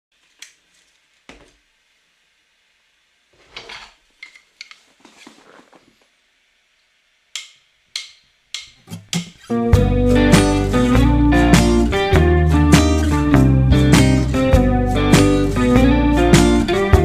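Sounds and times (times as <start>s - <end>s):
soft scraping: 4.8s - 6.1s.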